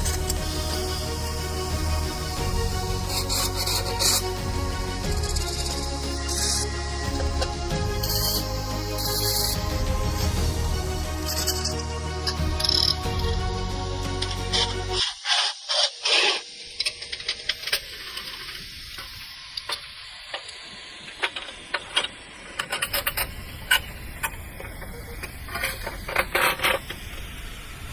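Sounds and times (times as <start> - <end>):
metal scraping rasps: 0.0 - 13.4, 14.2 - 19.2, 21.2 - 27.2
steel parts clicking and knocking: 14.2 - 27.2.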